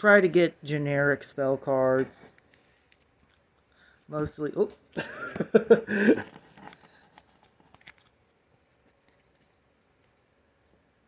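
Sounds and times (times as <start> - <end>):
person speaking: 0.0 - 2.4, 4.0 - 4.9
trading cards clicking and rustling: 6.1 - 10.3.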